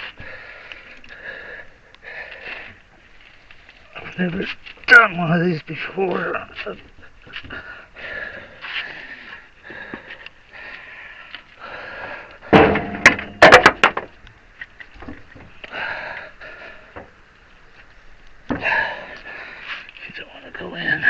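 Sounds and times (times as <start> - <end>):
sharp metal knocks and clanks: 12.5 - 14.1
workshop handling noise: 12.5 - 14.2.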